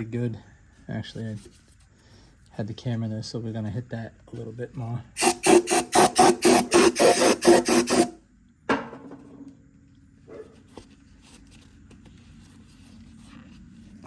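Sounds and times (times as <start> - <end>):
hand tool scrubbing metal: 5.2 - 8.1
tool set down on metal: 8.7 - 9.5.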